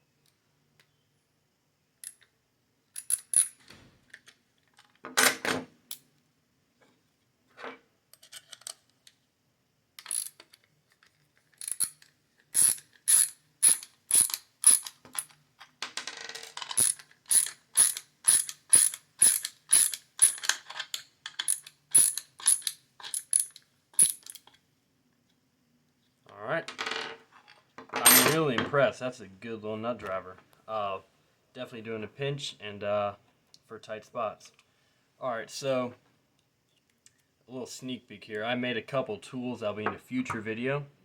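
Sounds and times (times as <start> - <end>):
ratchet driver clicking: 12.6 - 15.3, 16.8 - 20.8, 21.4 - 24.5.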